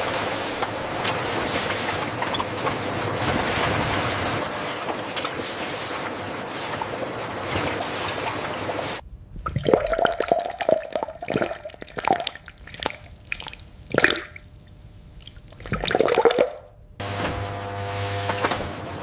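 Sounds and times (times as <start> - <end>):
steady machine noise: 0.0 - 9.3
liquid splashing and dripping: 9.4 - 16.6.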